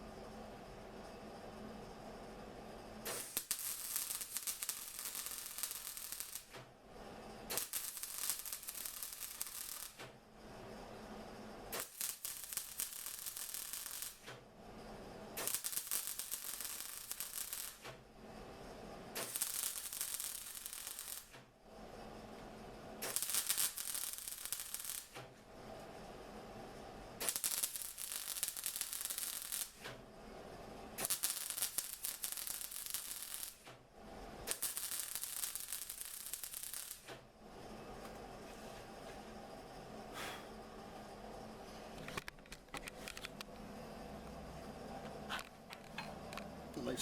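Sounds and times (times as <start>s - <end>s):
welder crackling: 3.0s - 6.6s, 7.5s - 10.1s, 11.7s - 14.4s, 15.4s - 17.9s, 19.2s - 21.4s, 23.0s - 25.2s, 27.2s - 29.9s, 31.0s - 33.7s, 34.5s - 37.2s.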